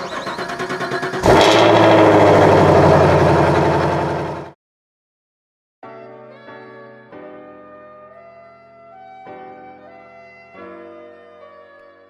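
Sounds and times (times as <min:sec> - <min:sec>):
engine running steadily: 0:00.0 - 0:04.5
engine cranking on starter: 0:00.0 - 0:04.6.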